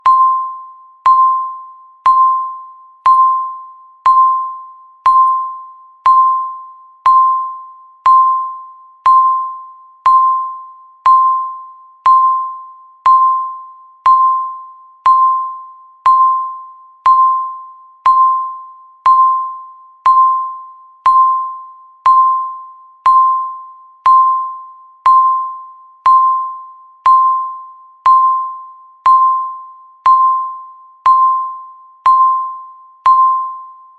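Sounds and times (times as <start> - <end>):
countdown timer beeps: 0.0 - 33.9.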